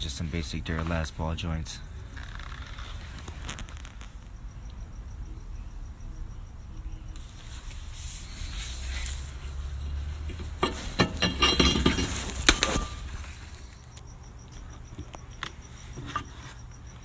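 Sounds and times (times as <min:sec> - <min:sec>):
faint pulsing high tone: 0:04.1 - 0:09.5
metal objects clicking and clinking: 0:10.6 - 0:13.9.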